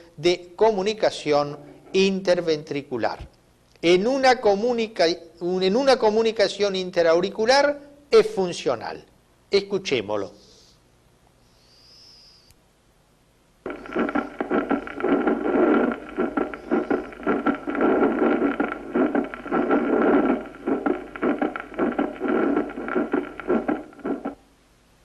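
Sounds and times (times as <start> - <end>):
recording hiss: 0.0 - 25.0
heart murmur: 13.7 - 24.4
heartbeat through stethoscope: 13.7 - 24.4.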